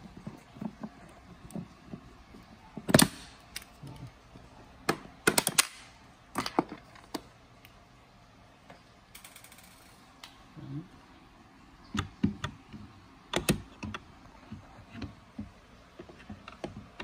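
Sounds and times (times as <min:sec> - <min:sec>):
plastic trim clicks and snaps: 0:04.9 - 0:07.2.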